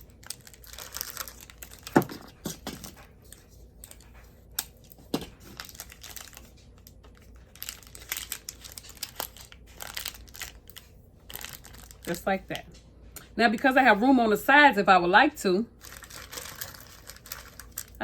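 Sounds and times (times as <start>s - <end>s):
plastic wrappers crinkling: 0.0s - 12.8s, 15.7s - 18.0s.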